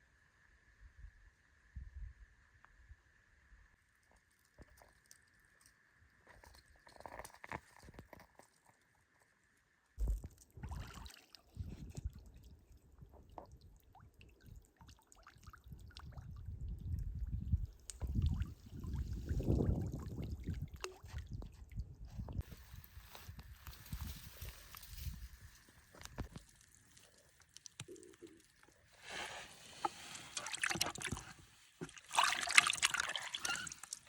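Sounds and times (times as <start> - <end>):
water pouring and dripping: 10.0 - 22.6, 23.8 - 29.0, 29.7 - 34.0
wind rumbling on microphone: 11.6 - 13.4, 15.7 - 26.4.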